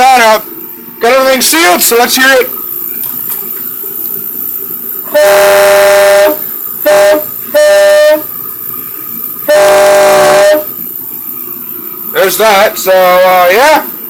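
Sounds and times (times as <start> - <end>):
air horn blasts: 5.1 - 8.3, 9.5 - 10.7.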